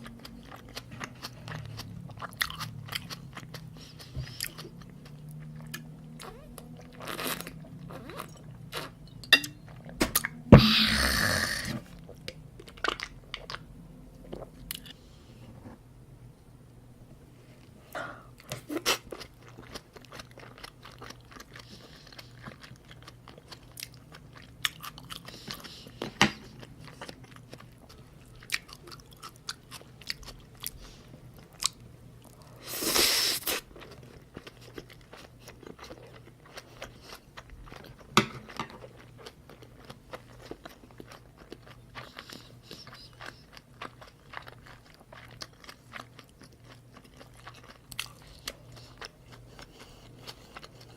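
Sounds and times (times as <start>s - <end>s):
wet chewing mouth sounds: 38.8s - 50.9s.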